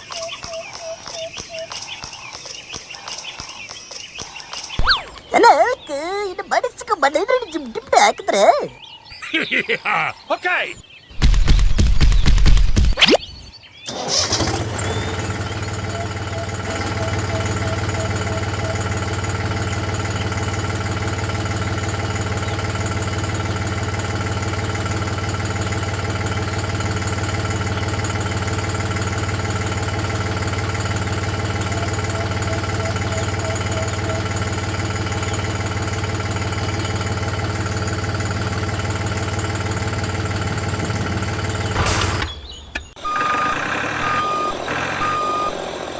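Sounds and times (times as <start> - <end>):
engine starting and running: 11.1 - 45.9.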